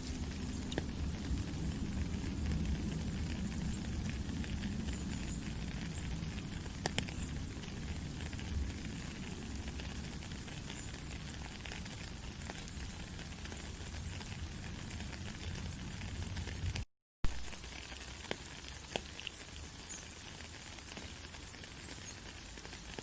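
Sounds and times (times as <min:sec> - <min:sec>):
low rumble: 0:00.0 - 0:10.4
rain pattering in forest: 0:00.0 - 0:23.0.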